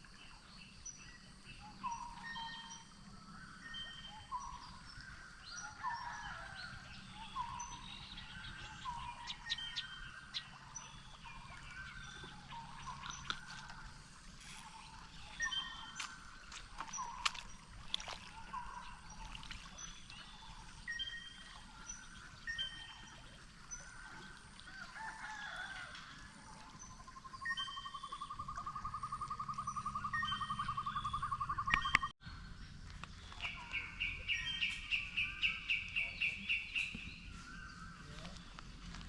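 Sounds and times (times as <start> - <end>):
birds whistling: 27.4 - 32.1.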